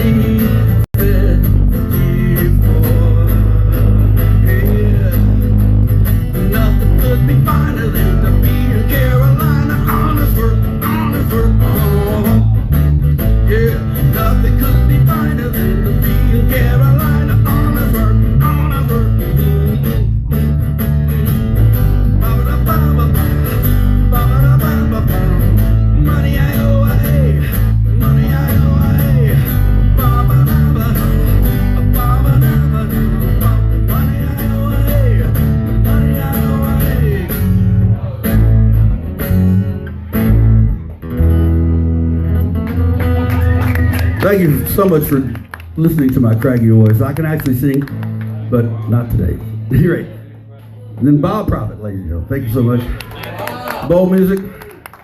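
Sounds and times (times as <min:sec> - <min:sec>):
blues-rock band instrumental: 0:00.0 - 0:45.1
wavering lead guitar: 0:00.0 - 0:51.0.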